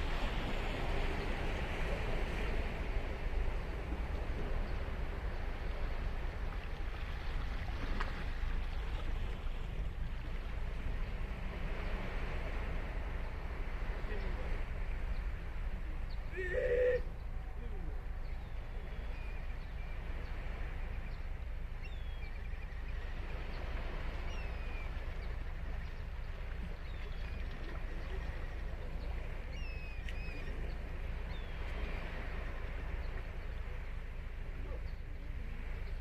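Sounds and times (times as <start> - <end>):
waves breaking on beach: 0.0 - 36.0
bird calls: 16.1 - 32.2.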